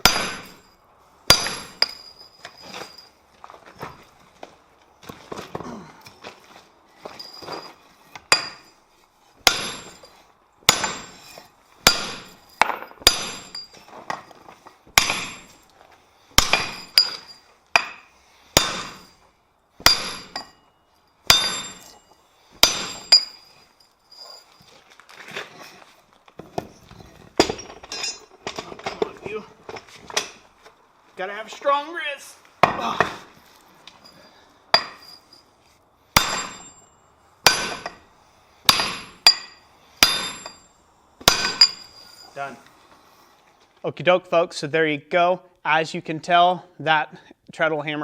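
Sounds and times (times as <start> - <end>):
hammer striking steel on anvil: 0.0 - 0.7, 1.3 - 2.2, 8.3 - 8.7, 9.4 - 10.1, 10.7 - 13.7, 15.0 - 15.6, 16.4 - 19.2, 19.8 - 20.6, 21.3 - 22.0, 22.6 - 23.4, 34.7 - 35.3, 36.2 - 36.9, 37.5 - 38.0, 38.7 - 41.9
soft irregular metal knocks and clinks: 0.5 - 5.2, 6.0 - 9.0, 12.4 - 15.9, 20.2 - 22.2, 22.9 - 30.8, 33.5 - 35.8.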